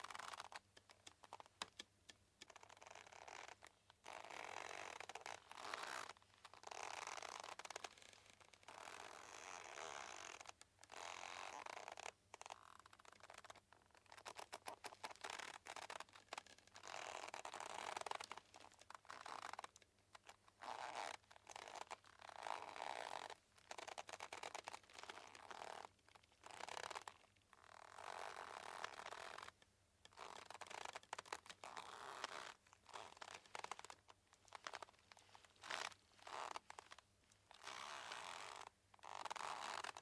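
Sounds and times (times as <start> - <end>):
mooring ropes creaking: 31.7 - 40.0.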